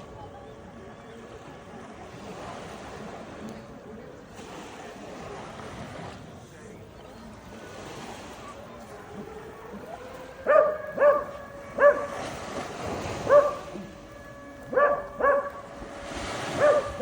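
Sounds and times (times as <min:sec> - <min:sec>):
dog barking: 0:09.7 - 0:12.4, 0:13.1 - 0:14.0, 0:14.6 - 0:15.8, 0:16.5 - 0:17.0.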